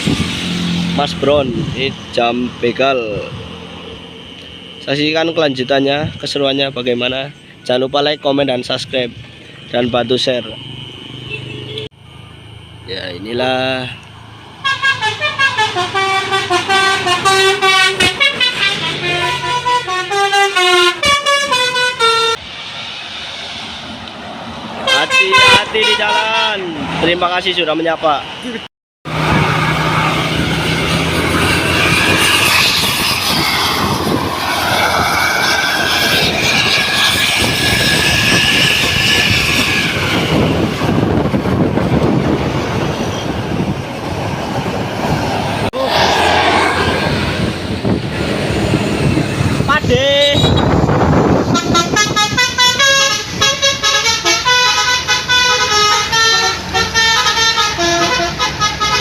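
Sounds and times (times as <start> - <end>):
bus passing at speed: 0.0 - 6.2, 8.7 - 59.0
bus horn playing melody: 14.6 - 22.4, 24.8 - 26.3, 51.5 - 59.0.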